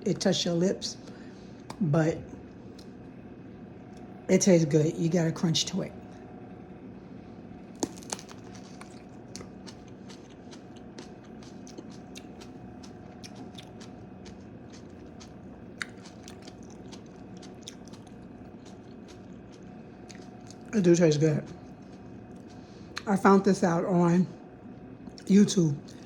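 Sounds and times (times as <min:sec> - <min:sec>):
faint steady hum: 0:00.0 - 0:26.0
chewing kiwi: 0:07.8 - 0:23.2, 0:25.0 - 0:26.0.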